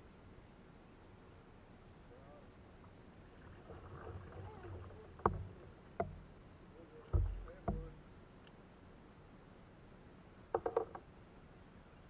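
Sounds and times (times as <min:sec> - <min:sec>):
hollow knocks on plastic kayak: 0:05.2 - 0:06.4, 0:07.1 - 0:08.1.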